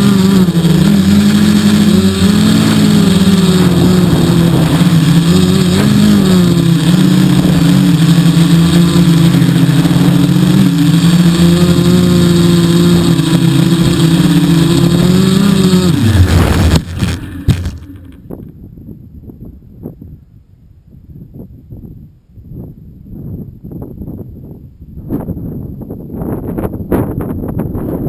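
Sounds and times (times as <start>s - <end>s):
quadcopter propellers humming: 0.0s - 18.4s.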